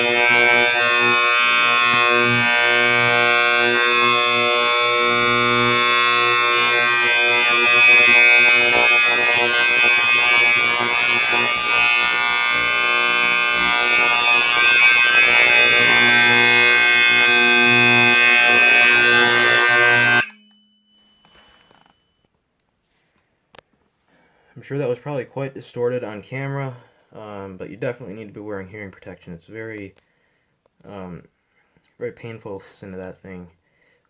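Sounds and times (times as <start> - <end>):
fire alarm horn steady tone: 0.0 - 22.3.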